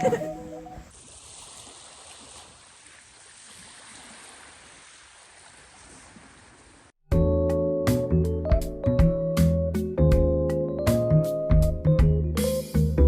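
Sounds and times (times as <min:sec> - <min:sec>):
sea waves washing ashore: 0:00.0 - 0:07.0.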